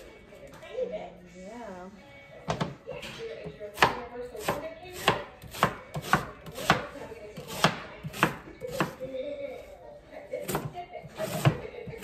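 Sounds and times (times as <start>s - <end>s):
knife chopping on cutting board: 3.7s - 9.0s, 10.4s - 12.0s.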